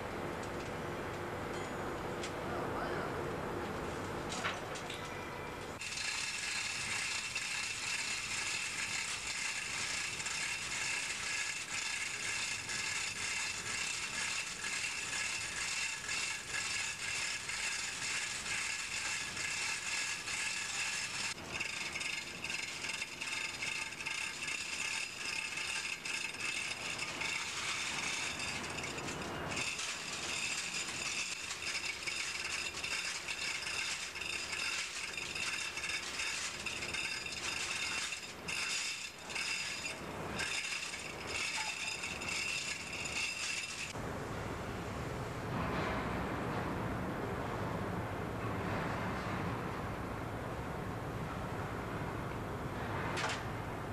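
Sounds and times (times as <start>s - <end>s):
fast continuous rattle: 5.8s - 44.0s.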